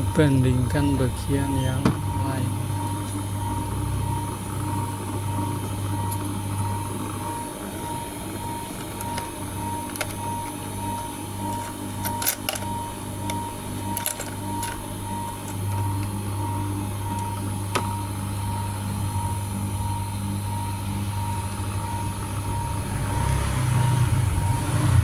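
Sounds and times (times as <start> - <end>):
electric motor hum: 0.0 - 25.0
clicks and knocks from handling parts: 8.8 - 16.2.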